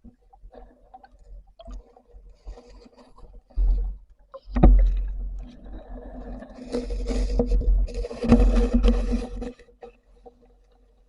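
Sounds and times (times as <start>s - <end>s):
underwater water surges: 0.0s - 10.7s
faint underwater crackling: 0.0s - 11.0s.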